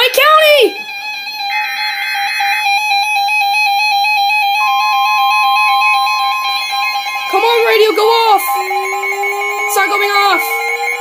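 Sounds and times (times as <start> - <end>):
keyboard melody: 0.0 - 11.0
steady warning alarm tone: 0.0 - 11.0
harsh buzzing data screech: 4.6 - 11.0.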